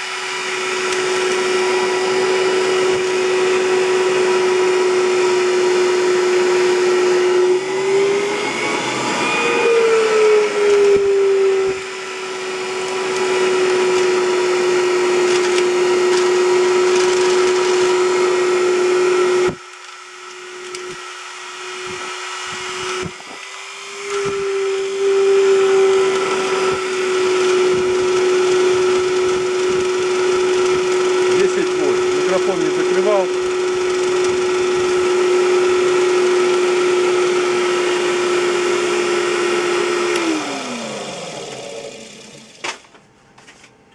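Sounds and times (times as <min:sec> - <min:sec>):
electric blower motor whine: 0:00.0 - 0:43.6.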